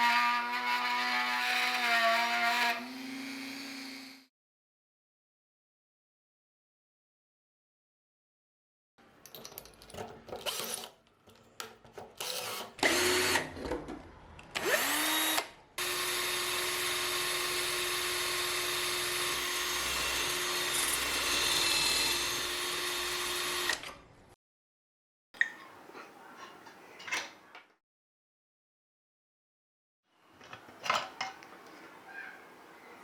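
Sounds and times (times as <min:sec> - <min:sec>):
power drill spinning: 0:02.5 - 0:04.3, 0:12.2 - 0:13.5, 0:14.6 - 0:24.0.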